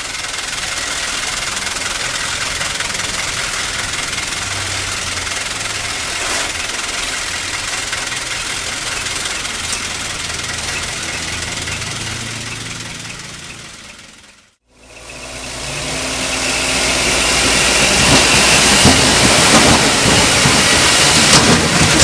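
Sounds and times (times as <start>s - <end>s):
diesel engine running: 0.0s - 22.0s
mechanical clatter: 17.4s - 22.0s.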